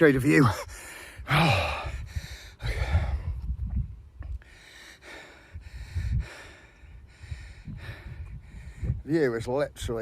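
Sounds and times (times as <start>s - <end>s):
man breathing hard: 0.6s - 3.5s, 4.3s - 9.0s.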